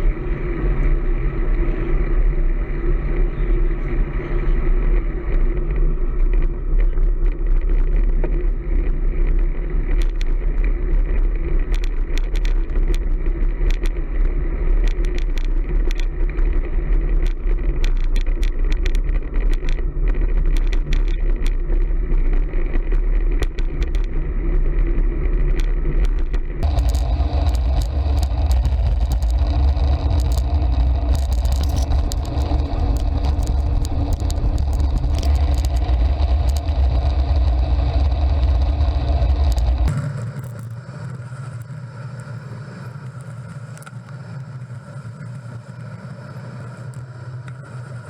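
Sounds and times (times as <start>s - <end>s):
wind and road rumble: 0.0s - 48.0s
bike clicks and rattles: 6.2s - 40.5s.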